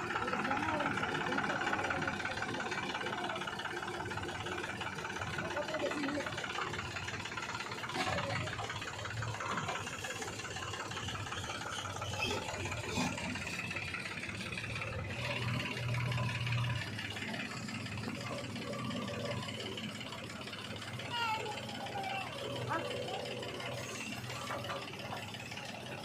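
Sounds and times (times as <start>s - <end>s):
diesel engine running at low revs: 0.0s - 26.0s.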